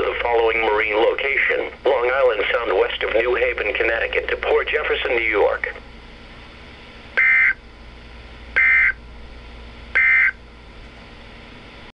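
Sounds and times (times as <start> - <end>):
radio hiss: 0.0 - 5.8
digital data tone bursts: 7.2 - 7.6, 8.6 - 9.0, 10.0 - 10.4.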